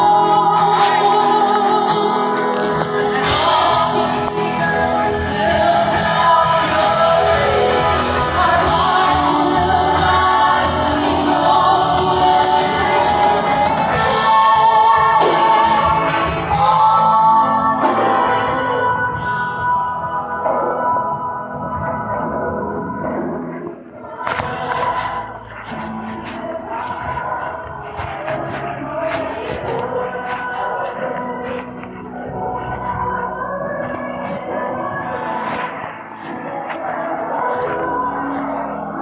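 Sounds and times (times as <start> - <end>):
voices singing worship music: 0.0 - 39.0.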